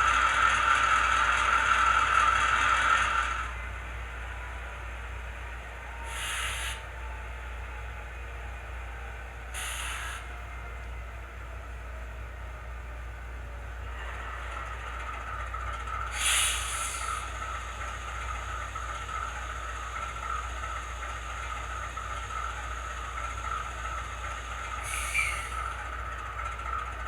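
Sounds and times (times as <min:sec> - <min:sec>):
model locomotive engine idling: 0:00.0 - 0:27.0
air release hiss: 0:06.1 - 0:06.8, 0:09.6 - 0:10.2, 0:16.1 - 0:17.1, 0:24.8 - 0:25.6.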